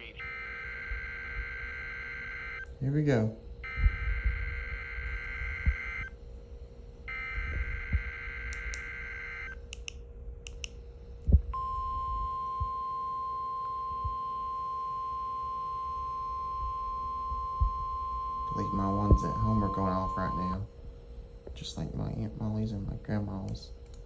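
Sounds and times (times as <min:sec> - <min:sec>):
buzzing digital header code: 0:00.0 - 0:02.7, 0:03.6 - 0:06.1, 0:07.1 - 0:09.6
steady warning alarm tone: 0:00.0 - 0:06.2, 0:07.1 - 0:09.6, 0:11.6 - 0:20.7.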